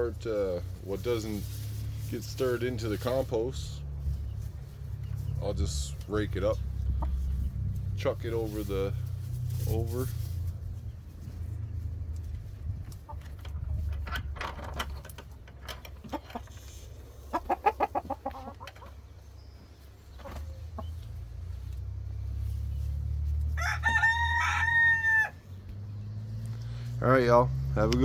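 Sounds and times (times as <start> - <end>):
chickens clucking: 0.4 - 24.2
low rumble: 0.8 - 15.3
rooster crowing: 23.6 - 25.4.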